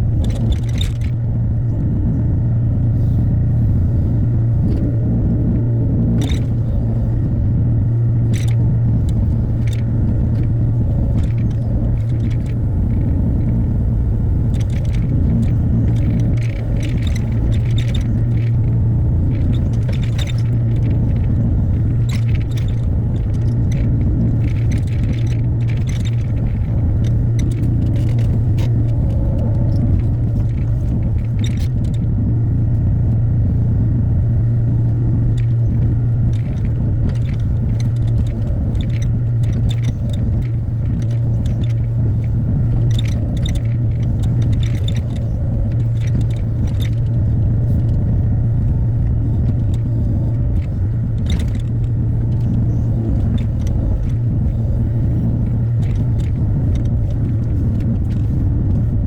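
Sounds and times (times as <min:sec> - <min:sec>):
excavator diesel engine running: 0:00.0 - 0:59.0
short clicks and scrapes: 0:00.2 - 0:01.3, 0:14.4 - 0:33.9, 0:35.2 - 0:59.0.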